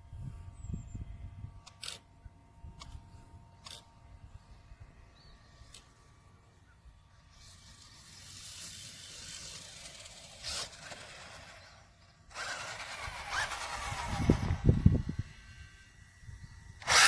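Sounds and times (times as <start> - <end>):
rc buggy rushing noise: 7.2 - 17.0.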